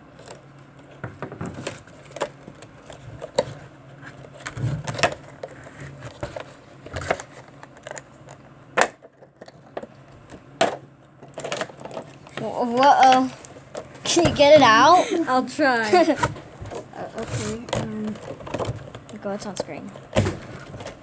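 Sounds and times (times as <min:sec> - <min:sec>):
packaging crinkling and clicking: 0:01.1 - 0:14.2.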